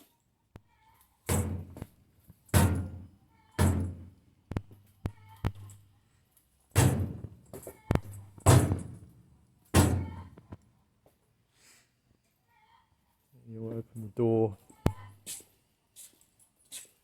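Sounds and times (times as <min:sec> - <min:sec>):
loud ringing thunks: 0:01.3 - 0:01.8, 0:02.6 - 0:04.1, 0:06.8 - 0:07.4, 0:08.0 - 0:09.1, 0:09.8 - 0:10.3.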